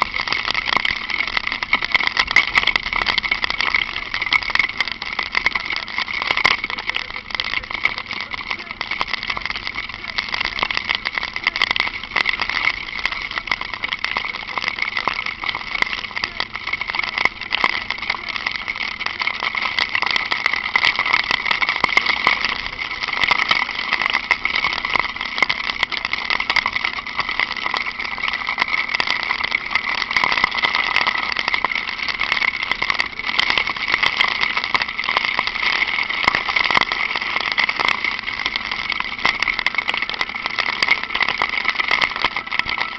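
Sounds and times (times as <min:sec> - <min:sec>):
small clicks: 0:00.0 - 0:42.9
wind and road noise: 0:00.0 - 0:42.9.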